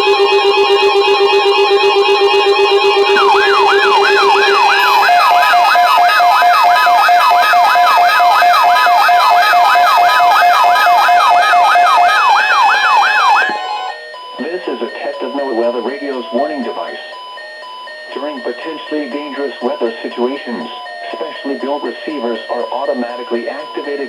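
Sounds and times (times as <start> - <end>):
siren-like alert tone sweeping: 1.5 - 14.0
electronic beeps: 2.8 - 6.4.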